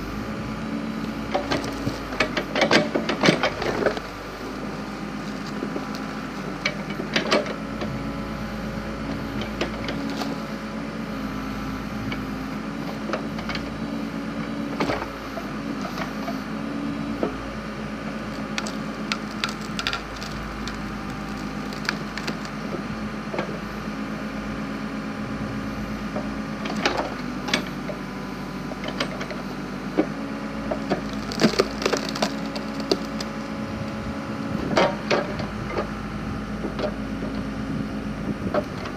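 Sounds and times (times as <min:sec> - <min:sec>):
backhoe engine running: 0:00.0 - 0:38.9
wood cracking and snapping: 0:01.3 - 0:07.5, 0:18.2 - 0:22.7, 0:30.7 - 0:34.0.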